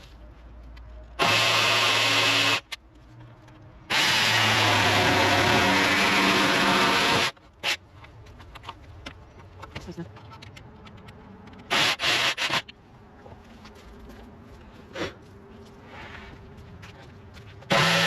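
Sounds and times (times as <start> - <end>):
power tool trigger bursts: 1.2 - 2.7, 11.7 - 12.7, 17.7 - 18.0
power tool whining: 1.2 - 2.7, 3.9 - 7.8, 17.7 - 18.0.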